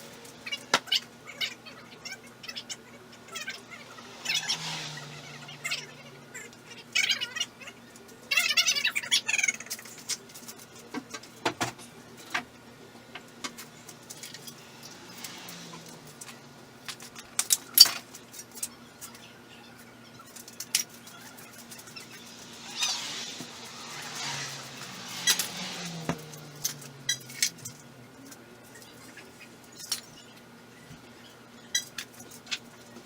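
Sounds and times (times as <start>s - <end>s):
steady low hum: 0.0s - 7.0s, 11.7s - 29.8s.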